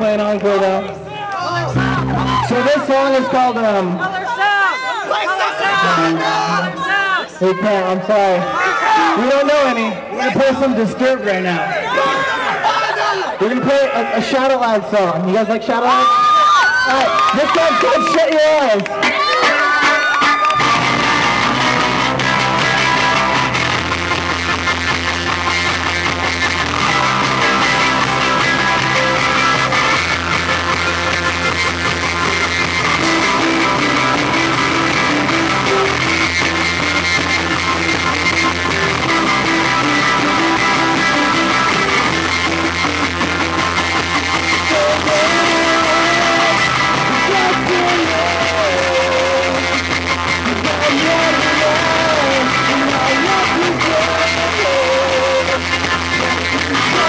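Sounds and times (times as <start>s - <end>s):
bass guitar: 0.0s - 4.0s, 18.8s - 57.0s
distorted electric guitar chords: 0.0s - 4.0s, 18.9s - 57.0s
drums: 17.0s - 57.0s.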